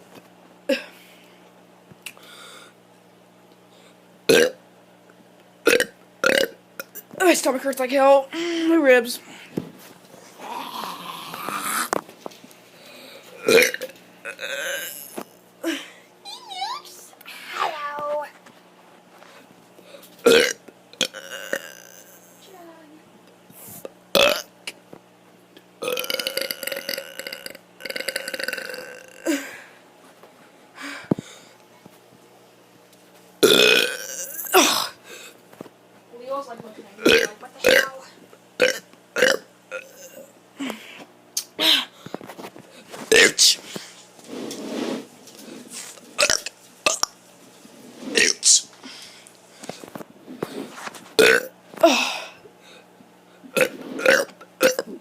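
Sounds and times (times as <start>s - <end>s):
child burping: 4.3s - 4.6s, 5.7s - 7.0s, 13.4s - 15.9s, 20.3s - 22.4s, 25.8s - 29.5s, 33.4s - 35.0s, 37.0s - 38.0s, 38.6s - 40.3s, 43.1s - 43.5s, 51.2s - 52.1s, 53.6s - 55.0s.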